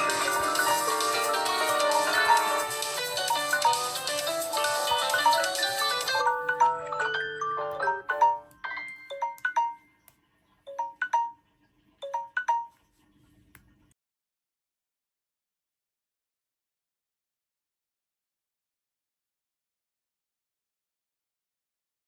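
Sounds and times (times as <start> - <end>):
smartphone ringtone melody: 0.0 - 10.0, 10.7 - 11.4, 12.0 - 12.8.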